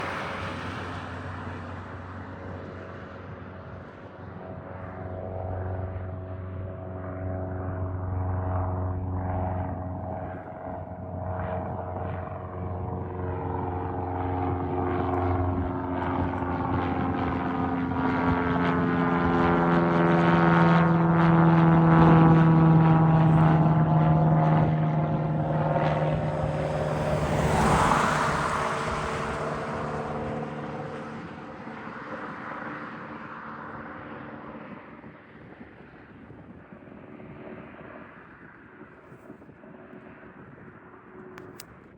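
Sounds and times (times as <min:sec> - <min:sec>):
aircraft rushing past: 0:00.0 - 0:38.7
light aircraft propeller drone: 0:00.0 - 0:41.9.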